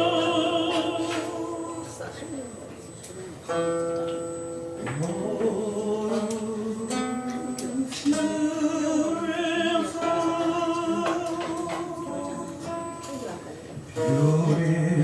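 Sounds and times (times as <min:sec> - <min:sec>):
person singing: 0:00.0 - 0:02.0, 0:04.9 - 0:12.8, 0:14.0 - 0:15.0.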